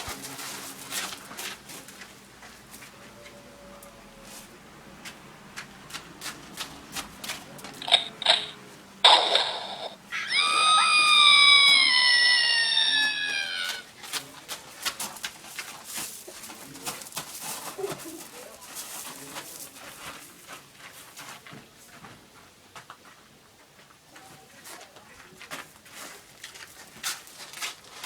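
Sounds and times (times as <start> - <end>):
person making animal-like squeal: 9.2 - 13.9.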